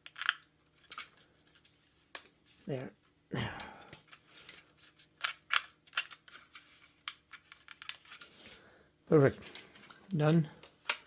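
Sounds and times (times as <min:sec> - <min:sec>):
hands clicking plastic computer parts: 0:00.0 - 0:01.2, 0:03.6 - 0:08.2, 0:09.6 - 0:11.0.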